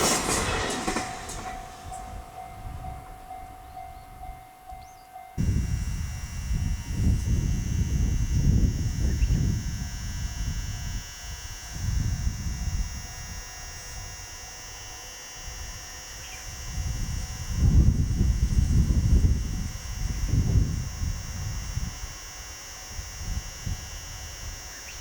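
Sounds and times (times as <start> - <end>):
wind buffeting microphone: 0.0 - 14.4, 15.4 - 25.0
steady high-pitched whine: 5.4 - 25.0.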